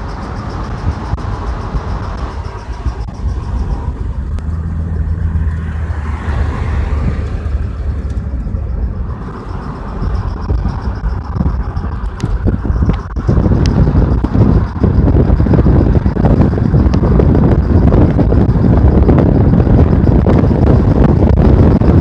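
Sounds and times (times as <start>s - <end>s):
car engine and road rumble: 0.0s - 22.0s
faint clicks: 8.0s - 14.8s.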